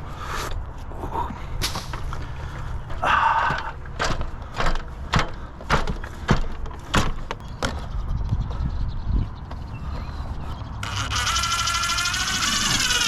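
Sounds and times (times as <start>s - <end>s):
sharp knocks: 3.5s - 7.8s
squeaky scrape: 10.5s - 13.0s.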